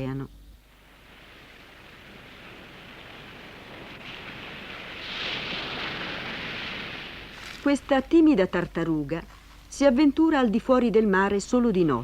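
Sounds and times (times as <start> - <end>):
ocean surf washing onto beach: 0.7 - 8.6.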